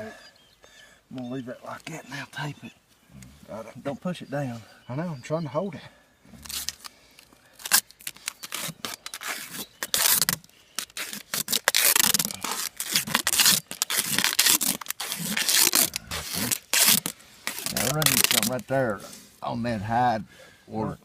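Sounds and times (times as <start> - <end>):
adhesive tape ripping off roll: 6.4 - 6.9, 7.6 - 18.6.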